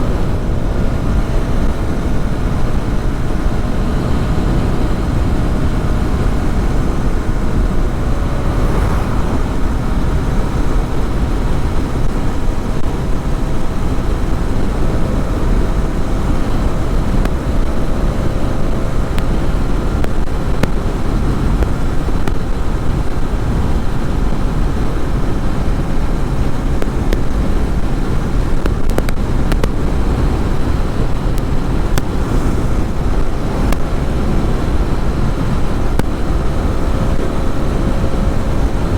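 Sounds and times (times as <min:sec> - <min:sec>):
motorcycle engine running: 0:00.0 - 0:38.9
wind and road noise: 0:00.0 - 0:38.9.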